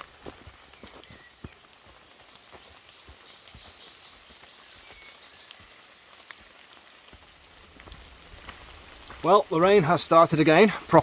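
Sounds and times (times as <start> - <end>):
rain pattering on leaves: 0.0 - 11.0.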